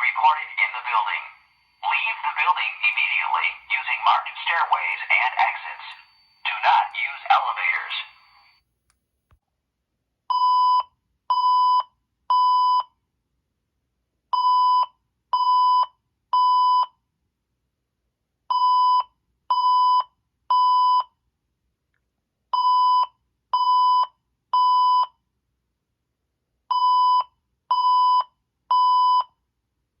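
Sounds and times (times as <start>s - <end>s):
fire alarm beeps: 0.0s - 8.5s.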